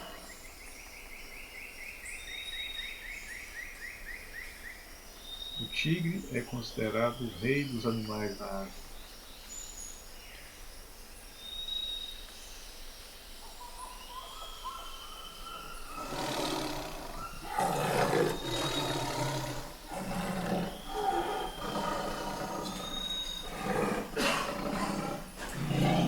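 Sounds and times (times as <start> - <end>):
tiger growling and roaring: 0.0 - 0.3, 15.8 - 26.0
faint bird chirps: 13.4 - 26.0.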